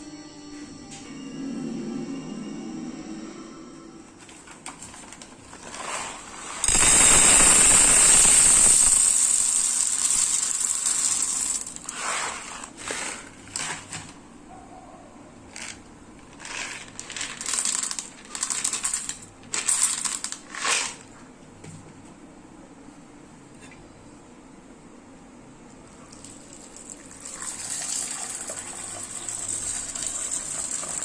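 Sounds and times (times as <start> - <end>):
spatula scraping pan: 11.9 - 13.4.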